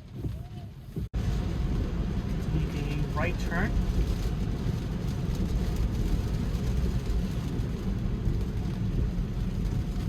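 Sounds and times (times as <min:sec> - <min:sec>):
car road and wind noise: 0:00.0 - 0:10.0
tyres on wet pavement: 0:00.0 - 0:10.0.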